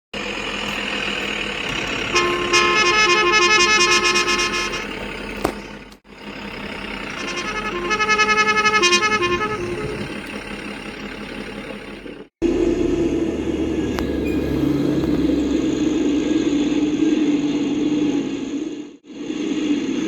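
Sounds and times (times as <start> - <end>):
toy truck horn tooting: 0.3 - 5.7, 6.3 - 11.6.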